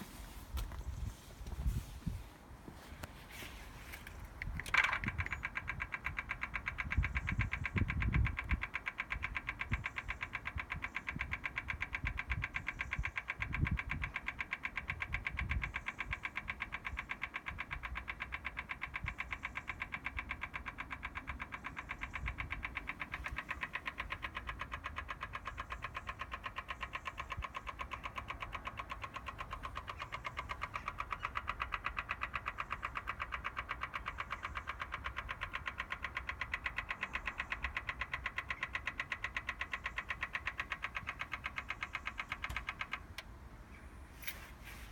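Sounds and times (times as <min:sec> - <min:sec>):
fast even clicking from car: 0:03.9 - 0:43.4.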